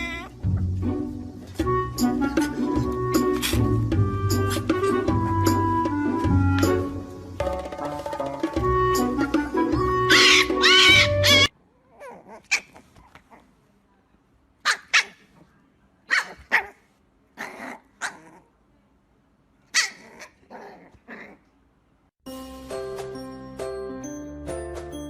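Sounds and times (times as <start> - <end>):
music: 0.0 - 11.5, 22.2 - 25.0
dog barking: 14.6 - 15.3, 16.1 - 16.8.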